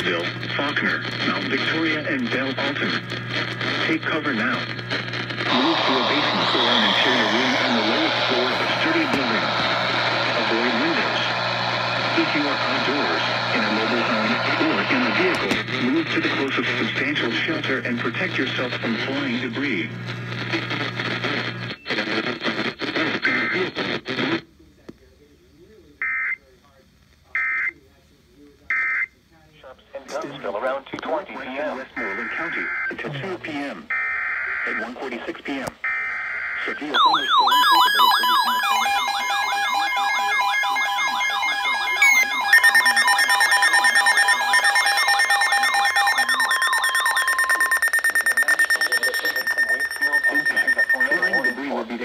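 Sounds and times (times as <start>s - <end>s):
voice broadcast over radio: 0.0s - 25.1s, 29.6s - 35.8s, 36.5s - 52.0s
rapid pulsing beep: 36.7s - 52.0s
downward sweeping siren tone: 37.0s - 47.6s
steady sustained electronic tones: 37.0s - 47.9s.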